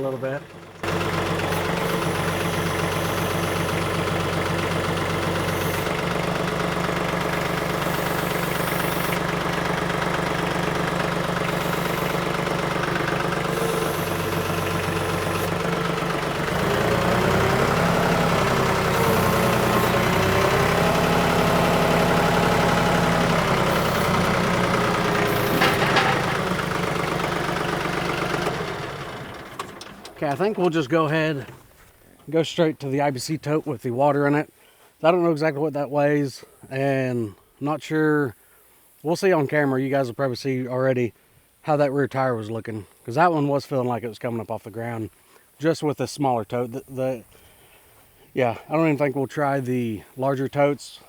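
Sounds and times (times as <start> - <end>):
tractor diesel engine running: 0.0 - 34.4.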